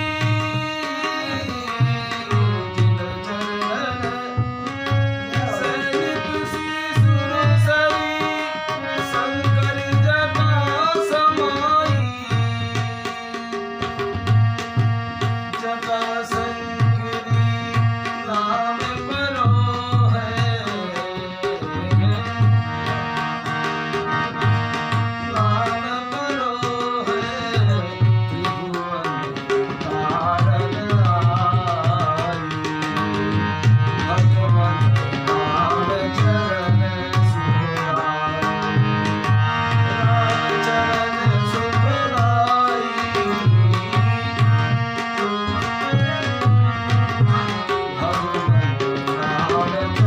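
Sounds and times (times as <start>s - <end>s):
tabla playing: 0.0s - 50.0s.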